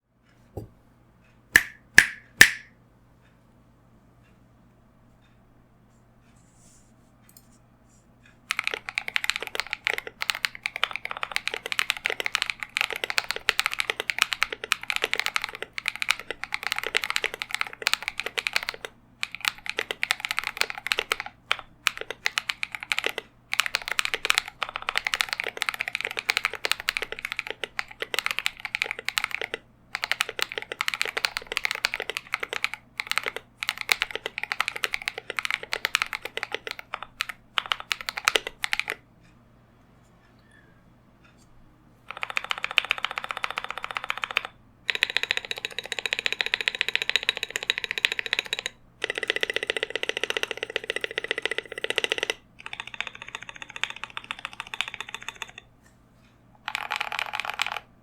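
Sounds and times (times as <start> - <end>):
fast mechanical keyboard typing: 8.5 - 39.0, 42.0 - 55.7, 56.6 - 58.0.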